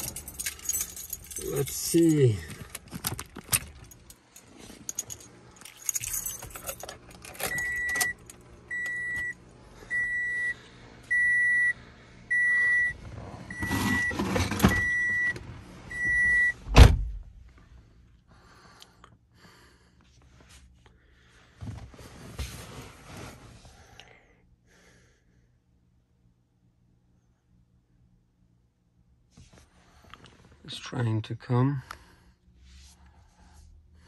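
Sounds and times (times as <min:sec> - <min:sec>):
car keys jangling: 0:00.0 - 0:08.5
car warning chime beeping: 0:07.4 - 0:16.6.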